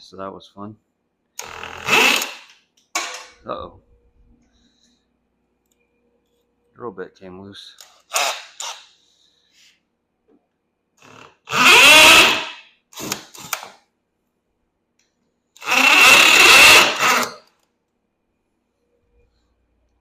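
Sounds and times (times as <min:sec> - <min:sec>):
power drill running: 0:01.4 - 0:02.5, 0:08.1 - 0:08.8, 0:11.0 - 0:13.6, 0:15.6 - 0:17.4.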